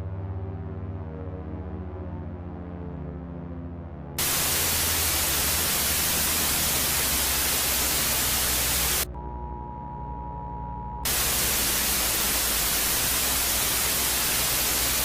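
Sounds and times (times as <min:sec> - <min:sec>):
low drone: 0:03.0 - 0:15.0
loud hissing static: 0:04.2 - 0:09.1, 0:11.1 - 0:15.0.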